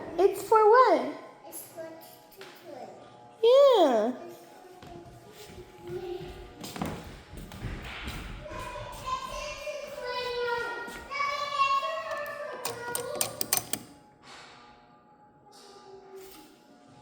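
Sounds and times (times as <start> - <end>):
child singing: 8.4 - 13.2.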